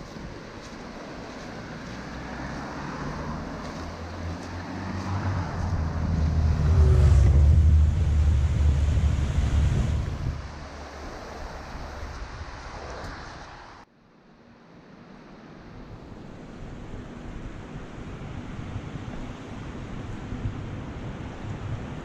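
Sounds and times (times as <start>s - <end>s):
mountain stream rushing: 0.0s - 13.9s
vehicle engine passing: 1.4s - 11.7s.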